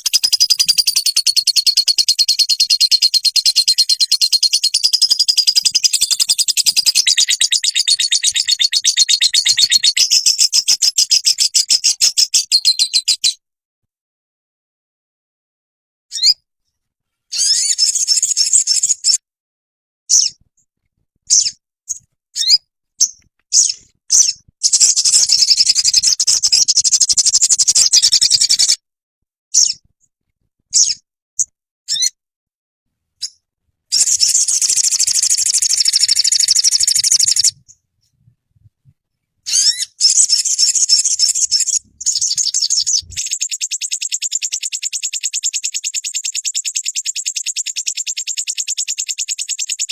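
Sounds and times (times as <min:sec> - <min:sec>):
bird chirps: 0:00.0 - 0:13.4, 0:16.1 - 0:16.4, 0:17.3 - 0:19.2, 0:20.1 - 0:20.4, 0:21.3 - 0:28.8, 0:29.5 - 0:29.8, 0:30.7 - 0:32.2, 0:33.2 - 0:37.8, 0:39.4 - 0:49.9
bird trilling: 0:00.0 - 0:13.4, 0:16.1 - 0:16.4, 0:17.3 - 0:19.2, 0:22.4 - 0:28.8, 0:31.9 - 0:32.2, 0:33.2 - 0:37.6, 0:39.5 - 0:49.9.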